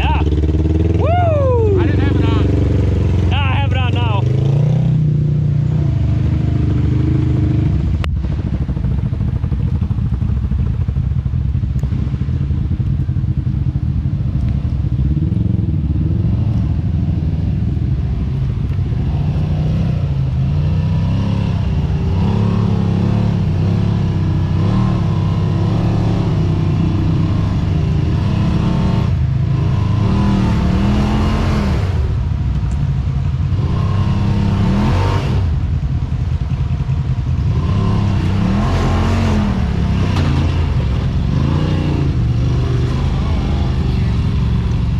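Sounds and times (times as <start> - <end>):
off-road vehicle engine revving: 0.0 - 8.5, 11.8 - 44.9.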